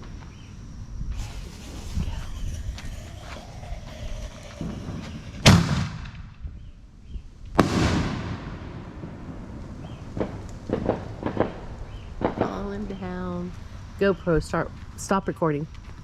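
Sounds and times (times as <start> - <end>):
firework booms echoing: 7.6 - 12.9.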